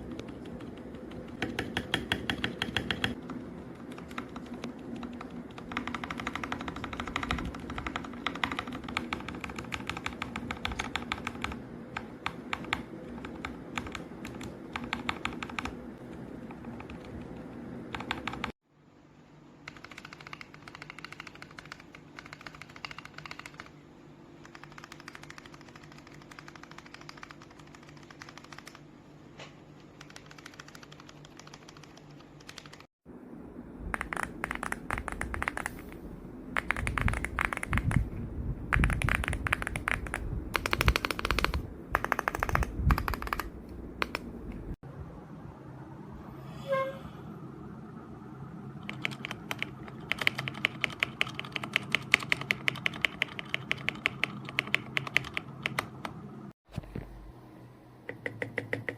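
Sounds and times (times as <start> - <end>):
mechanical keyboard typing: 0.0 - 18.6, 19.7 - 23.8, 24.4 - 28.8, 29.9 - 32.9, 33.9 - 35.9, 36.6 - 38.1, 38.7 - 44.3, 48.8 - 56.2, 58.1 - 58.9
low hum: 33.1 - 50.2.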